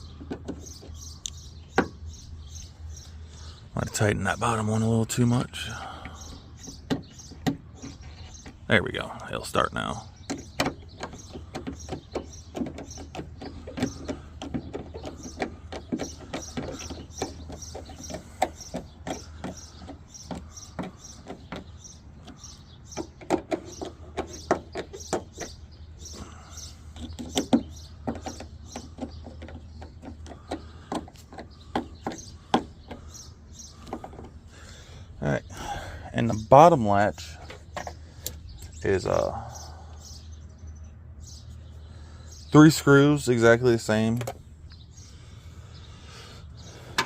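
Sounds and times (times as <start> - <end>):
metal tapping against door: 10.2 - 25.6.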